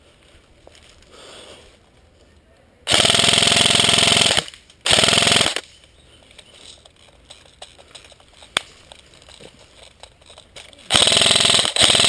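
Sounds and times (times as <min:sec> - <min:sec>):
airsoft gun firing full-auto: 0:02.9 - 0:05.6, 0:10.9 - 0:12.0.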